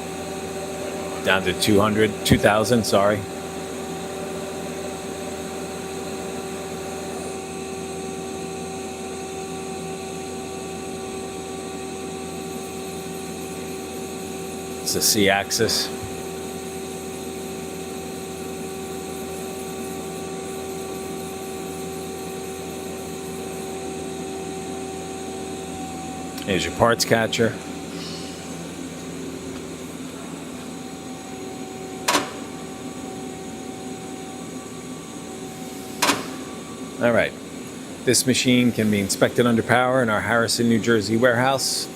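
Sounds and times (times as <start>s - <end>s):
machine hum: 0.0s - 41.9s
machine whine: 0.0s - 41.9s
parts catcher clunk: 32.0s - 32.5s, 36.0s - 36.5s.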